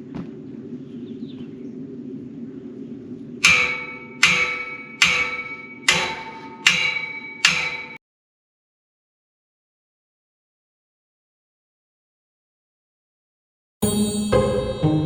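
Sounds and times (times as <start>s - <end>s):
hammer striking steel: 3.4s - 8.0s.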